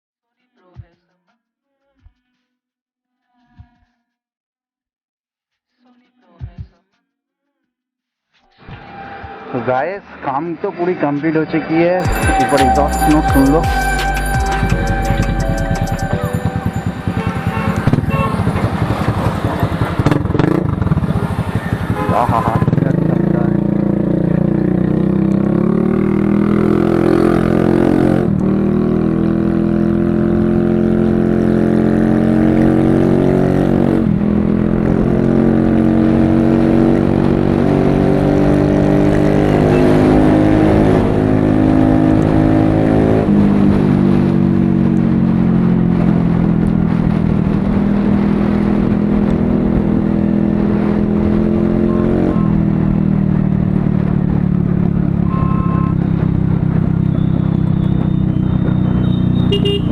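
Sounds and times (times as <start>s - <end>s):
scooter engine revving: 16.7s - 29.6s, 59.0s - 59.9s.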